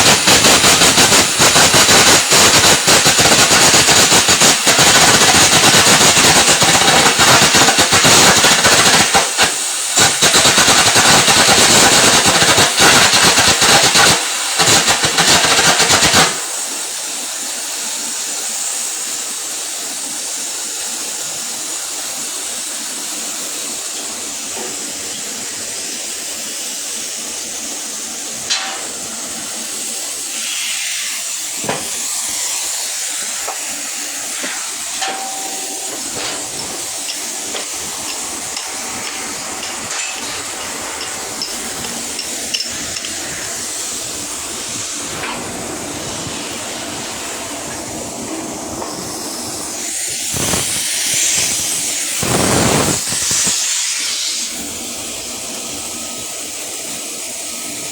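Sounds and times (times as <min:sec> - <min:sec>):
sharp welding pops: 0:00.0 - 0:16.8, 0:28.4 - 0:29.6, 0:30.3 - 0:47.0, 0:49.7 - 0:54.5
arc welding sizzling: 0:00.0 - 0:18.0, 0:21.2 - 0:57.9.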